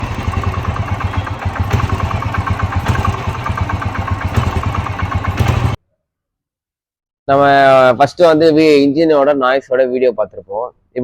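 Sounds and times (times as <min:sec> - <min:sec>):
motorcycle engine idling: 0:00.0 - 0:05.8
rhythmic engine knocking clatter: 0:00.0 - 0:05.8.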